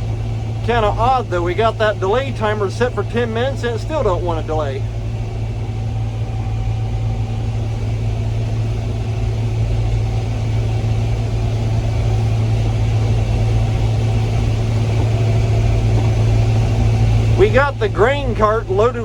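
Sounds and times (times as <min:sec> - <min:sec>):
combine harvester engine drone: 0:00.0 - 0:19.0
faint steady tones: 0:00.0 - 0:19.0.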